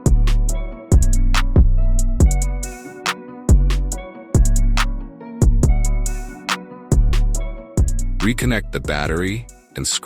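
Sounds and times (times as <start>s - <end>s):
bass line: 0.0s - 2.8s, 3.5s - 9.6s
electronic beat music: 0.0s - 9.8s
crisp hi-hats: 0.0s - 9.9s
heavy kick drum: 0.1s - 2.6s, 3.5s - 4.8s, 5.4s - 6.0s, 6.9s - 8.2s, 8.8s - 9.5s.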